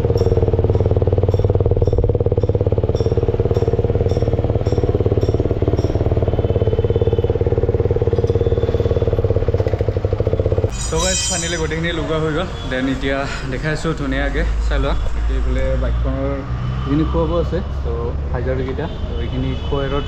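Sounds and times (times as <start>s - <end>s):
motorcycle engine idling: 0.0s - 10.7s.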